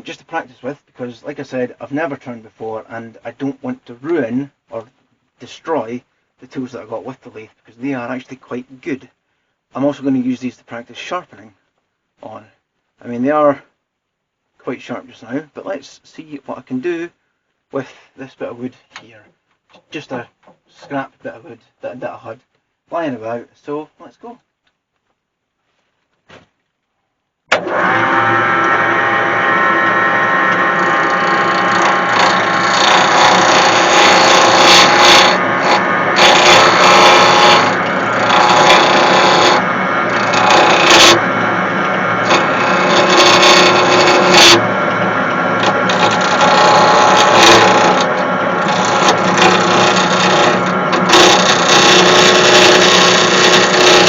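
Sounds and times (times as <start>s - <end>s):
woodturning lathe running: 27.5s - 54.0s
gouge cutting spinning wood: 27.6s - 54.0s.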